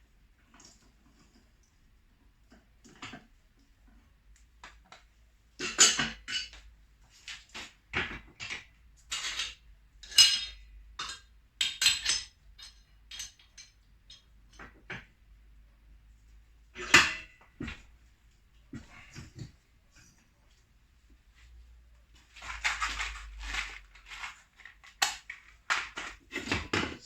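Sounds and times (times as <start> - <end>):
metal tools clinking: 9.1 - 14.7.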